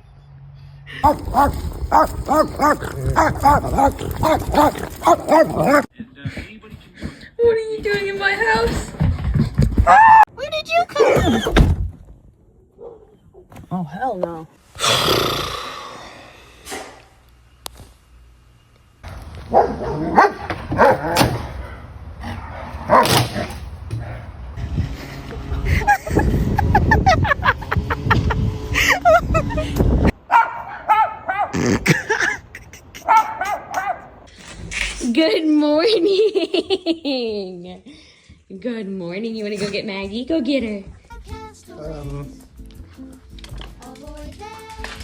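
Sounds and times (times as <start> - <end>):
dog barking rapidly: 1.0 - 5.9, 19.5 - 21.2, 22.9 - 23.2, 30.3 - 31.6, 33.0 - 34.1.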